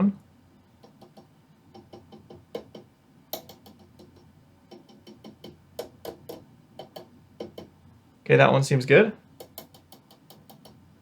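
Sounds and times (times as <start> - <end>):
tapping on glass tube: 0.8 - 7.8.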